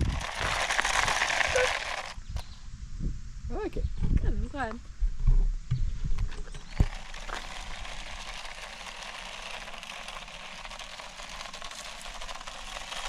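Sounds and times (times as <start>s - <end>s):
toy car motor rushing: 0.0s - 2.3s, 6.4s - 13.0s.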